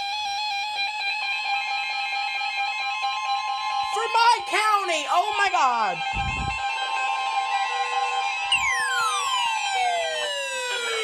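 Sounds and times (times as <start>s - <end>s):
steady electronic alert tone: 6.0s - 6.6s.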